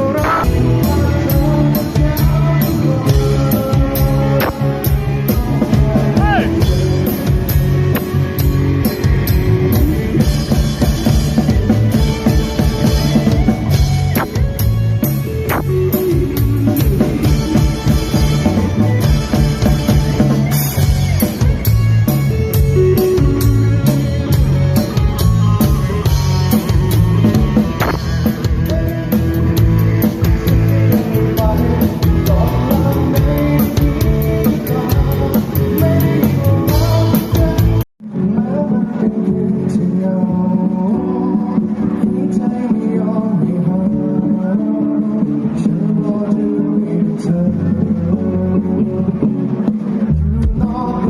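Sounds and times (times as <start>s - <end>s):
band music with drums and guitar: 0.0s - 51.0s.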